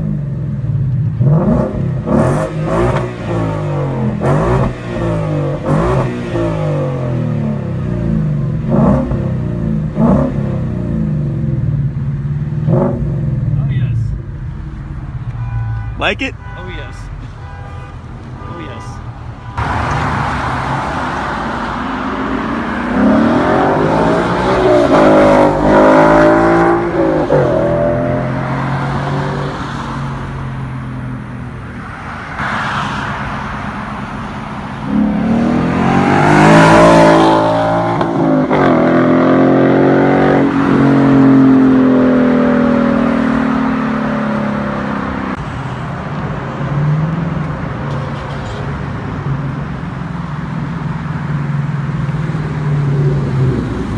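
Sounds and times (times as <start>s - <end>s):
car engine accelerating hard: 19.6s - 30.4s, 34.8s - 45.4s.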